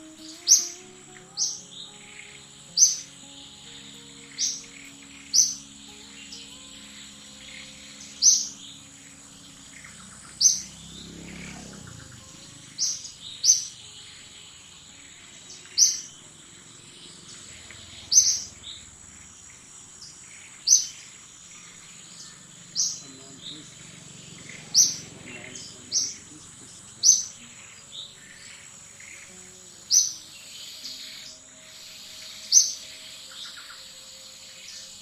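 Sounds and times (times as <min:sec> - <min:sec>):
bird chirping: 0:00.0 - 0:35.0
high insect-like whine: 0:00.0 - 0:35.0.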